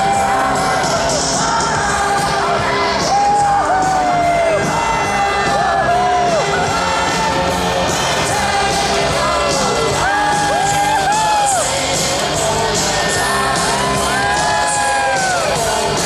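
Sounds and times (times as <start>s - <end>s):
crowd whooping and shouting: 0.0s - 16.0s
music with held sung notes: 0.0s - 16.0s.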